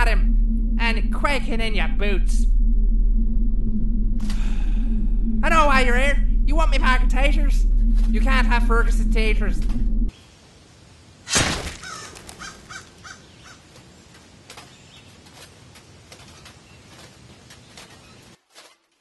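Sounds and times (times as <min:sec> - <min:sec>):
faint outdoor ambience: 0:00.0 - 0:18.7
crow cawing: 0:11.8 - 0:13.7.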